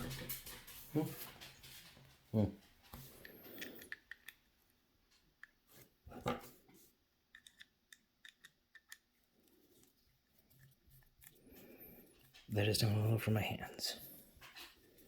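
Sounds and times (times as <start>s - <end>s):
plastic switch parts clicking: 7.3s - 9.1s.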